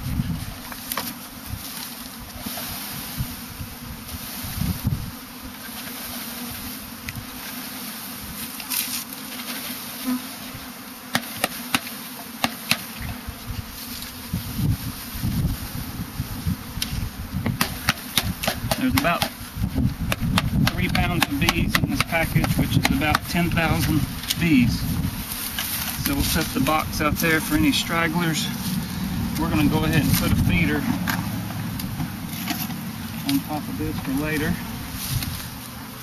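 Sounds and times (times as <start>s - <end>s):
honeybees buzzing: 0.0s - 36.0s
knocks and taps: 20.1s - 23.2s.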